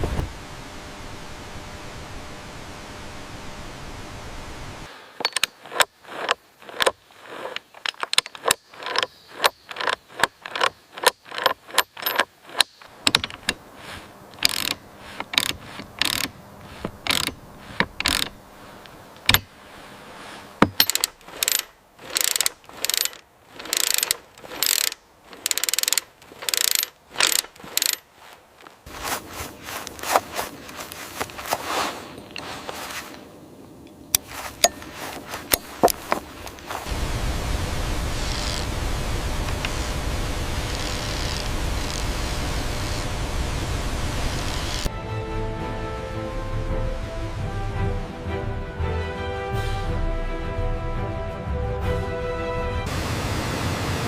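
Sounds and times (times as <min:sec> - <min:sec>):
hand tool working wood: 0:05.2 - 0:33.2, 0:34.2 - 0:36.9
steady hiss: 0:13.5 - 0:23.0, 0:28.3 - 0:44.9.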